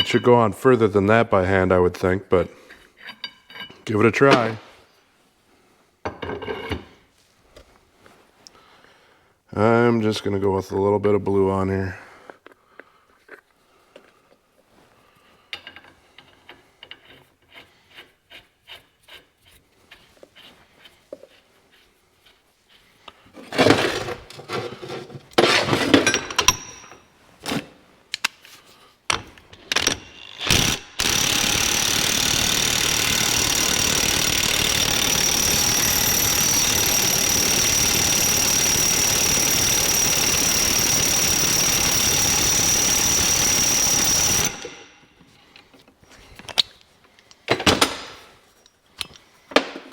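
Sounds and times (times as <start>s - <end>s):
power tool whining: 29.6s - 45.1s.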